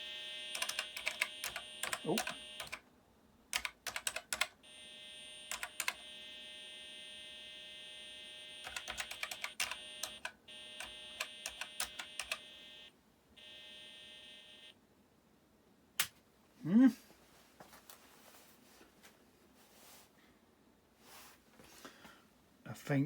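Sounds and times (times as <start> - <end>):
steady buzzing tone from speaker: 0.0 - 2.8, 4.6 - 14.8
sharp clicks: 0.4 - 2.8, 5.4 - 6.1, 8.5 - 12.6.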